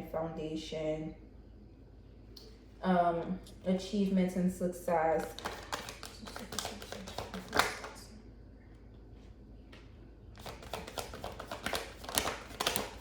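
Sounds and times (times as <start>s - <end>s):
cards flicking and slapping: 5.2s - 7.9s, 10.4s - 13.0s.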